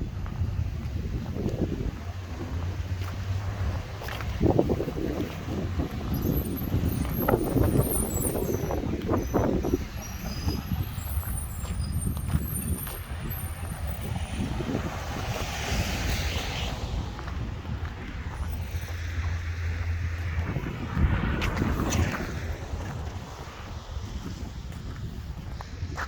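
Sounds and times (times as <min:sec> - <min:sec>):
traffic engine hum: 0:00.0 - 0:26.0
passing vehicle hiss: 0:13.8 - 0:17.5.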